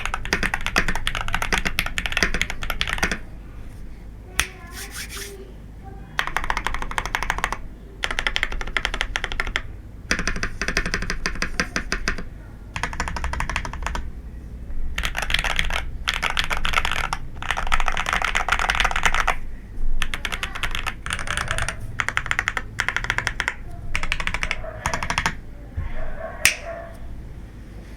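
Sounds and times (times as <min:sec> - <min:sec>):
rapid mechanical keyboard clacks: 0:00.0 - 0:03.3, 0:06.2 - 0:14.1, 0:14.9 - 0:19.4, 0:20.0 - 0:25.4.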